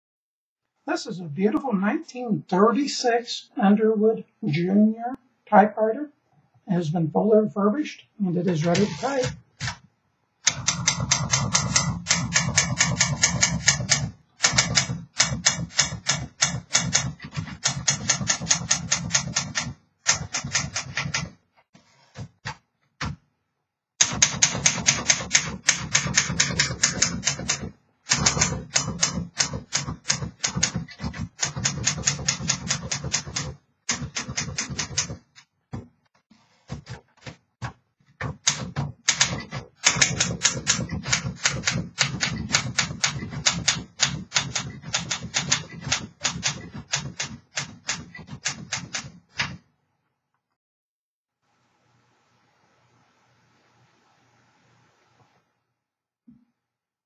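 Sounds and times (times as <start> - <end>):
typewriter keystrokes clacking: 8.6 - 9.8, 10.4 - 21.4, 24.0 - 35.4, 38.2 - 49.6.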